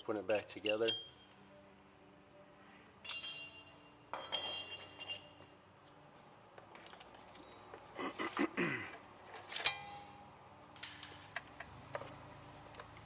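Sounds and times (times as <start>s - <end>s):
metal pieces clinking: 3.0s - 5.4s.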